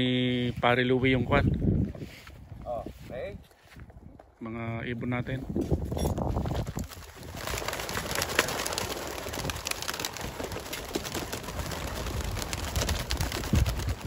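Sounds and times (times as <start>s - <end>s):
pigeon wings flapping: 6.4s - 14.0s.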